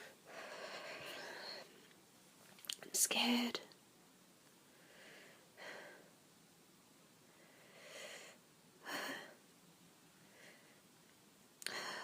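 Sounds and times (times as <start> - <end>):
soft nasal breath: 0.0 - 1.8, 4.7 - 6.2, 7.3 - 9.4, 10.2 - 10.9.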